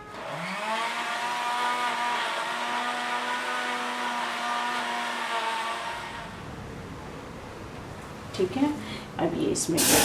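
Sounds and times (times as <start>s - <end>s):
mixer grinder motor whine: 0.0s - 6.4s.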